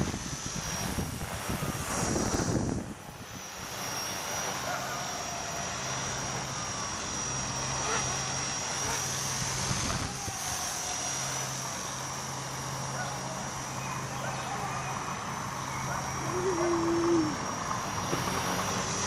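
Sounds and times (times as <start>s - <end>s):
wind rushing: 0.0s - 3.4s
electric motor whine: 0.0s - 19.0s
rotor hum: 0.0s - 19.0s.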